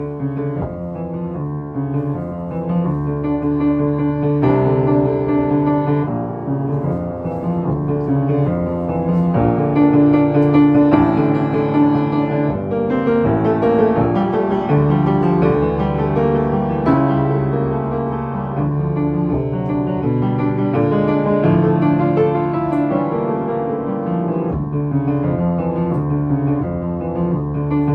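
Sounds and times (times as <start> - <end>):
solo piano playing chords: 0.0 - 27.9.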